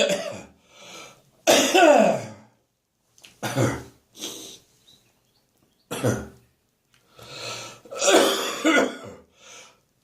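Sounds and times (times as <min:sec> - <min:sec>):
person coughing: 0:00.0 - 0:00.6, 0:01.5 - 0:02.5, 0:03.4 - 0:04.4, 0:05.9 - 0:06.4, 0:07.9 - 0:09.3.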